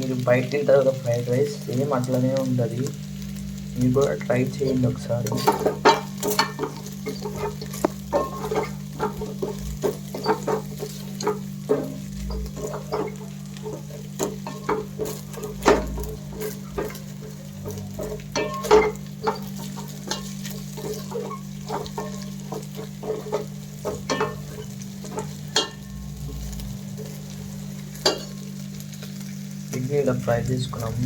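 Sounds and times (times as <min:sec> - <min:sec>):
eggs sizzling: 0:00.0 - 0:31.0
spatula scraping frying pan: 0:04.4 - 0:29.8.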